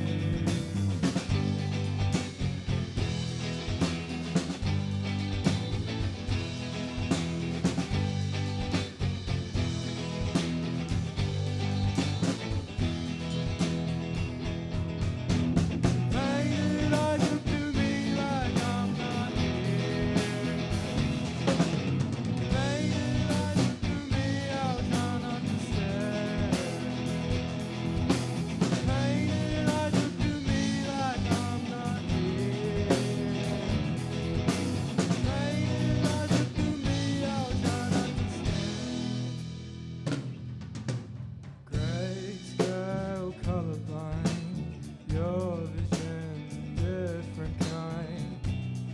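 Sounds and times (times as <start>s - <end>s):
drum kit: 0.0s - 48.9s
guitars: 0.0s - 48.9s
person singing: 16.1s - 21.0s, 35.2s - 38.4s.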